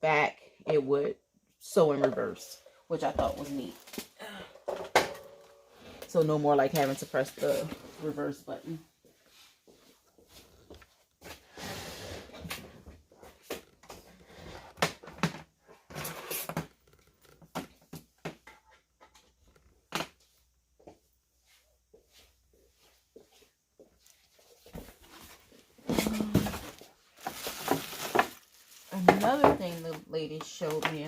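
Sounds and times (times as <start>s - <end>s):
packaging rustling: 25.5s - 29.9s.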